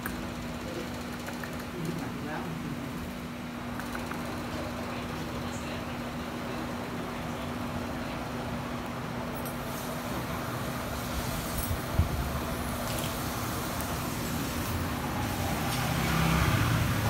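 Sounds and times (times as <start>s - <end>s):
road traffic noise: 0.0s - 17.0s
vehicle passing close by: 14.4s - 17.0s.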